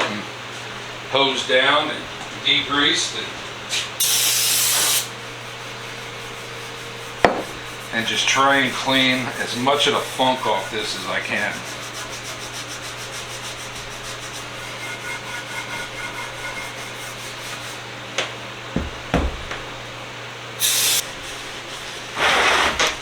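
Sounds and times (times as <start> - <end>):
scraping and scrubbing metal parts: 3.4 - 17.9, 20.6 - 23.0
loud hissing bursts: 4.0 - 5.8, 20.6 - 23.0
sharp knocks: 7.2 - 7.6, 18.7 - 19.7.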